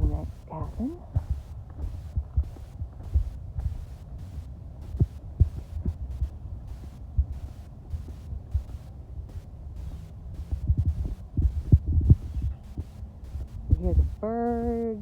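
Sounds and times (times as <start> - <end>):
footsteps: 0.0 - 6.1
low rumble: 0.0 - 14.8.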